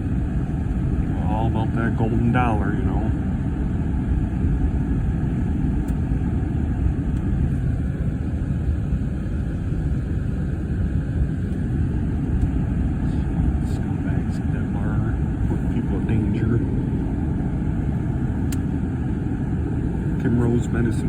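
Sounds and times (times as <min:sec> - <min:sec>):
car interior road noise: 0:00.0 - 0:21.0.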